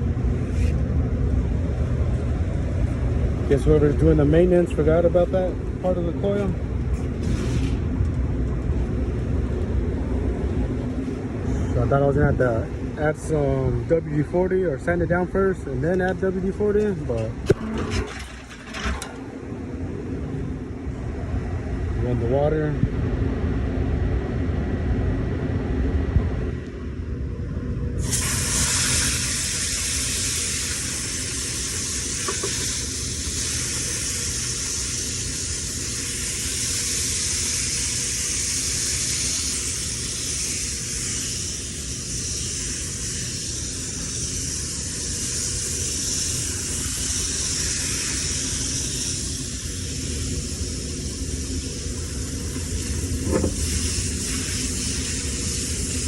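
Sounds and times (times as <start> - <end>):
low steady rumble: 0.0 - 56.0
water spraying hiss: 28.0 - 56.0.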